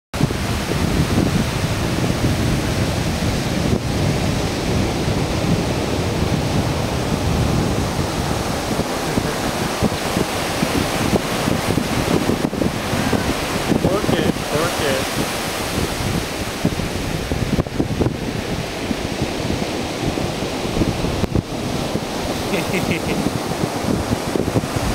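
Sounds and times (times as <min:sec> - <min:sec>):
wind buffeting microphone: 0:00.1 - 0:24.9
ocean surf on beach: 0:00.2 - 0:24.9.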